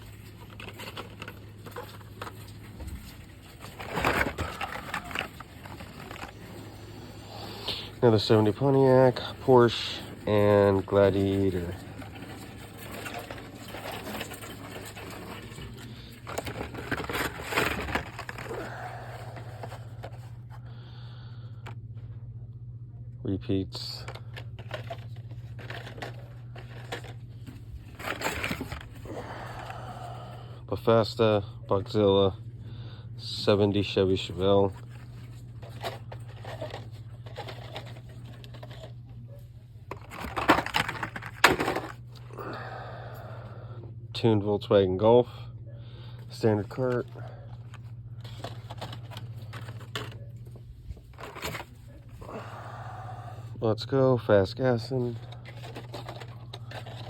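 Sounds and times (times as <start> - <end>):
cardboard rustling: 0.0 - 6.5, 12.8 - 20.5, 24.6 - 29.1, 39.9 - 42.0, 47.0 - 52.2, 55.0 - 57.0
steady low hum: 0.0 - 57.0.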